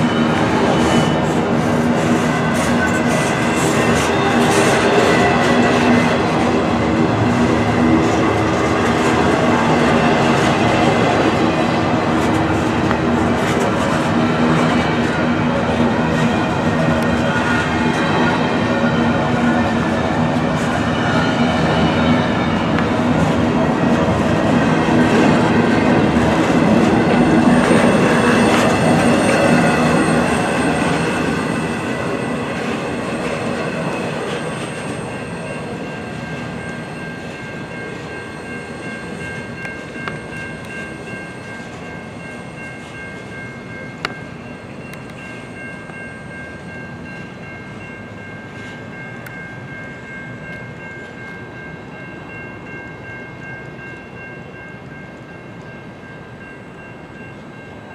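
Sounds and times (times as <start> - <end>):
train cars rumbling on rails: 0.0 - 57.9.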